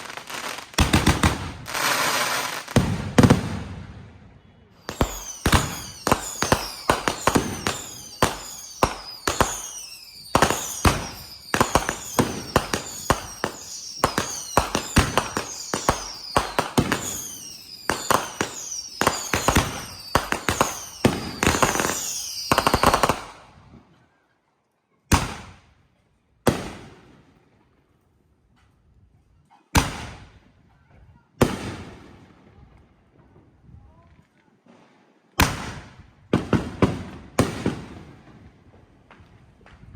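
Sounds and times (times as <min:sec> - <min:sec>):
fireworks falling whistles: 0:00.0 - 0:03.4, 0:04.6 - 0:23.4
fireworks bangs: 0:00.0 - 0:23.4.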